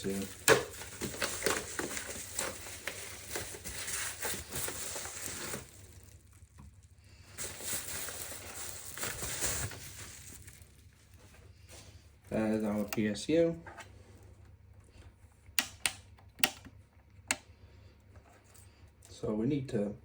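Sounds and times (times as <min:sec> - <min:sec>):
cardboard rustling: 0:00.0 - 0:12.9
plastic packaging crinkling: 0:00.0 - 0:12.9.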